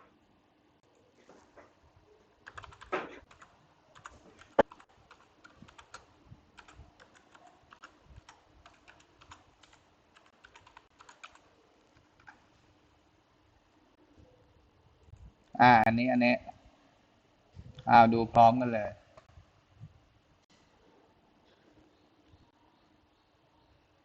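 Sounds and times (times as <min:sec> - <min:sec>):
computer keyboard typing: 0:02.4 - 0:12.5.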